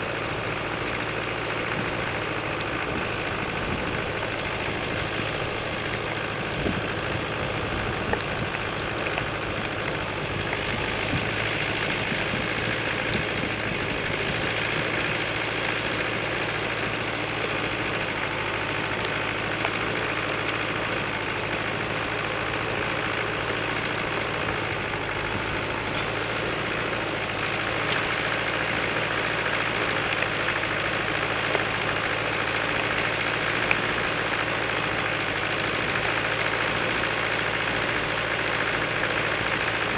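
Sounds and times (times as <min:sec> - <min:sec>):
tractor diesel engine idling: 0:00.0 - 0:39.9
faint clicks: 0:27.4 - 0:39.6.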